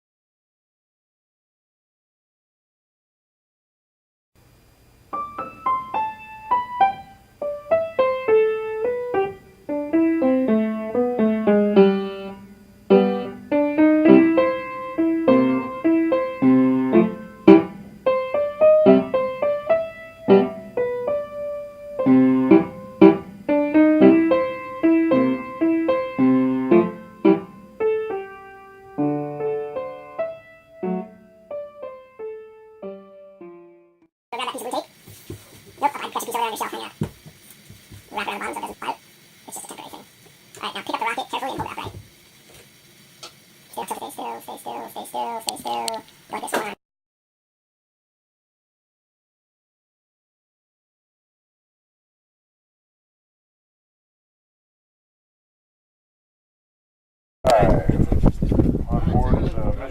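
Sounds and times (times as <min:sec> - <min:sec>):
solo piano music: 0:05.1 - 0:34.1.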